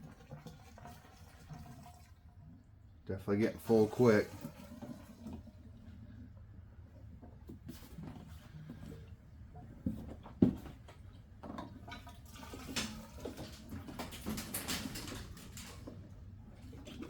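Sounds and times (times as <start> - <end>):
gasoline pouring into container: 0.0 - 6.4, 11.0 - 17.0.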